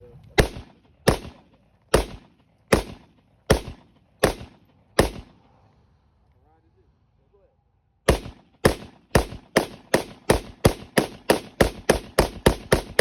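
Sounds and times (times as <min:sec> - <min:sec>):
rifle shots with echo: 0:00.3 - 0:05.5, 0:08.0 - 0:13.0.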